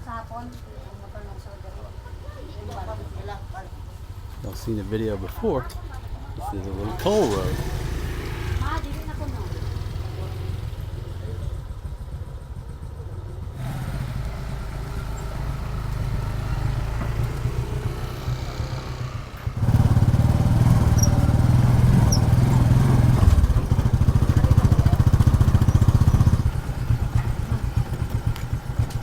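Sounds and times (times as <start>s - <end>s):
motorcycle engine running: 0.0s - 29.0s.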